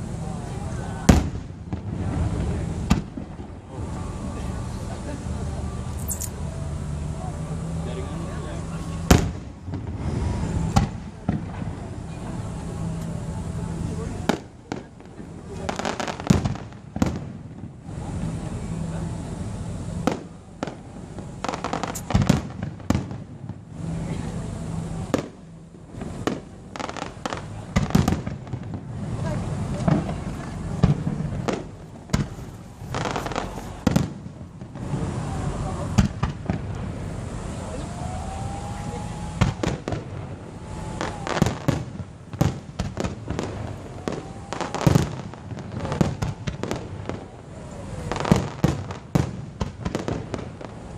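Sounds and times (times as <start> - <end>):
fireworks bangs and crackles: 0.0 - 50.9
firework whistle gliding in pitch: 37.1 - 41.8.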